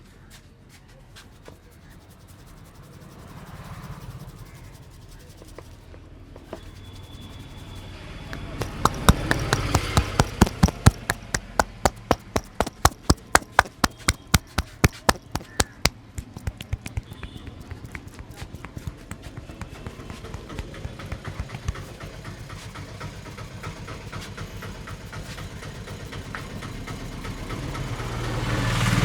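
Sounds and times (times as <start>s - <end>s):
hands rubbing scalp and hair: 8.4s - 21.9s
rhythmic tapping on head: 8.4s - 22.2s.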